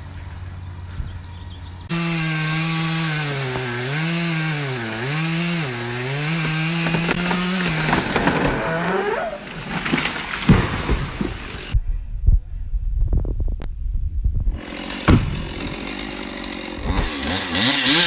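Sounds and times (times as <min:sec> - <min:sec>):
chainsaw cutting: 0:01.8 - 0:11.8, 0:14.5 - 0:18.0.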